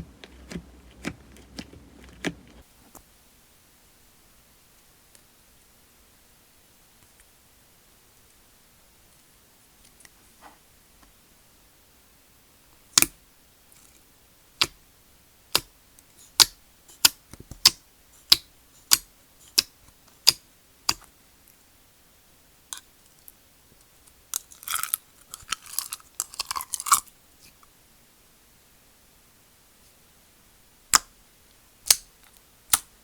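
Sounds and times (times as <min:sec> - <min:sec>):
slime squishing: 0:00.0 - 0:02.6.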